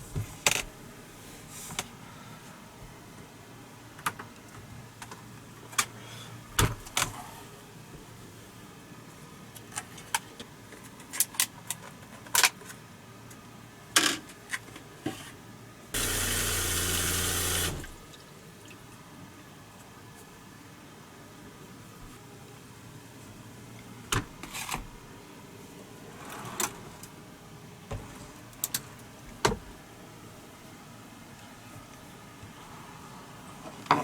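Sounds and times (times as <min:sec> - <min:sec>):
water running hard: 0:16.0 - 0:18.0.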